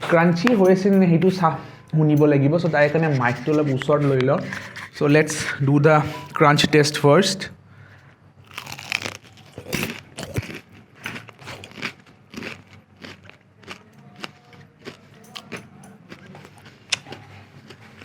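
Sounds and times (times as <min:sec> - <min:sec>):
crunchy chewing: 0:08.4 - 0:18.0
fried chicken crunching: 0:08.4 - 0:18.0.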